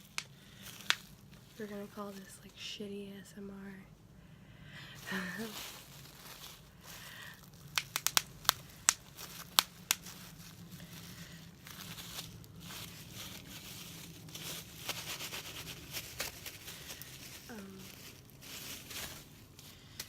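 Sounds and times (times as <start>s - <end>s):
plastic packaging popping: 0.0s - 1.4s, 5.3s - 20.0s
plastic crinkling and tearing: 0.0s - 2.4s, 5.0s - 20.0s.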